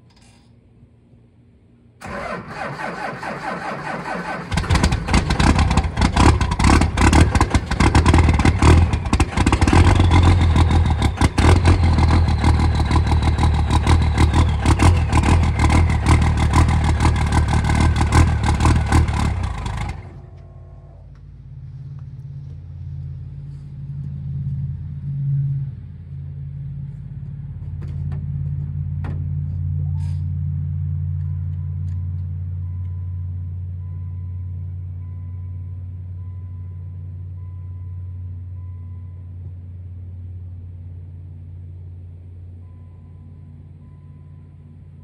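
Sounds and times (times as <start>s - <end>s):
diesel engine idling: 2.0s - 42.7s.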